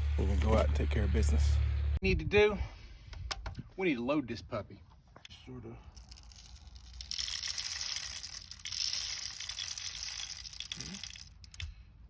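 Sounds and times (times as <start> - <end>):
steel pellets rattling: 5.9 - 11.7.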